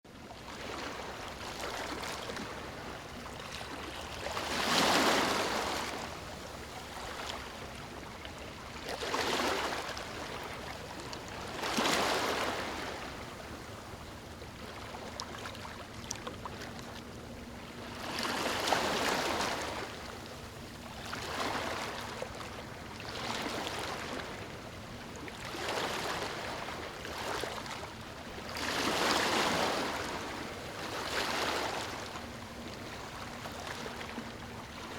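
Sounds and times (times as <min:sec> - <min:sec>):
small waves breaking: 0:00.1 - 0:34.9.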